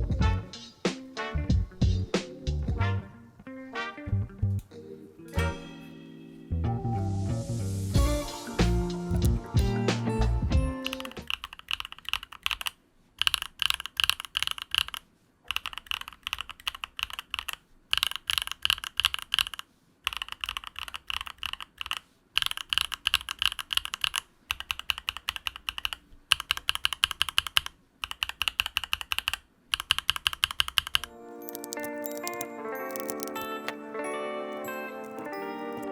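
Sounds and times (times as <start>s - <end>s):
mechanical keyboard typing: 9.1s - 9.3s, 10.8s - 33.8s, 34.5s - 35.9s.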